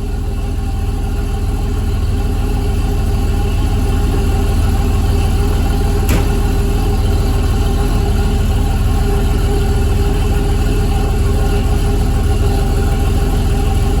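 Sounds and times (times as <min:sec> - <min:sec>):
engine running steadily: 0:00.0 - 0:14.0
sharp click: 0:06.1 - 0:06.5.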